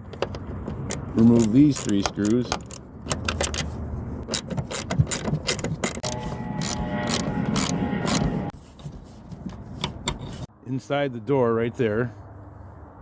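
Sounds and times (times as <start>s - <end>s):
ratchet clicks: 0.8s - 2.8s, 4.3s - 8.2s
ratcheting tool whirring: 4.3s - 8.4s.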